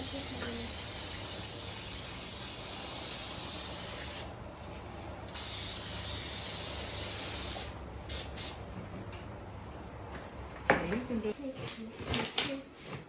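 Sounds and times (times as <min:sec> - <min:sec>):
aerosol cooking spray hissing: 0:00.0 - 0:04.3, 0:05.4 - 0:08.6.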